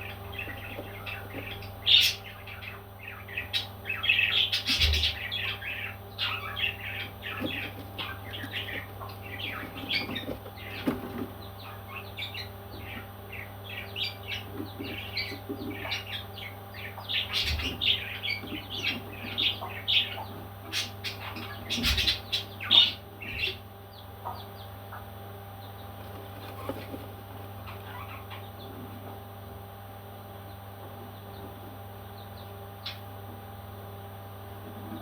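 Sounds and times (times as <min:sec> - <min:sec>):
baby parrots chirping and squawking: 0:00.0 - 0:23.6, 0:26.0 - 0:28.9
steady low hum: 0:00.0 - 0:35.0.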